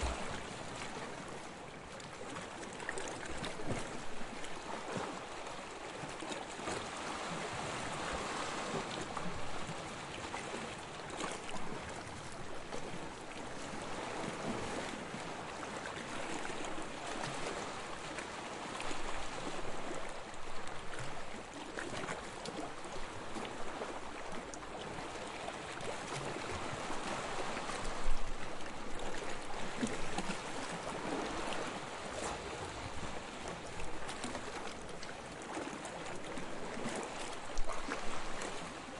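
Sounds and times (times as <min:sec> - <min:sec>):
water splash: 0:00.0 - 0:01.0
sea water lapping: 0:00.0 - 0:38.9.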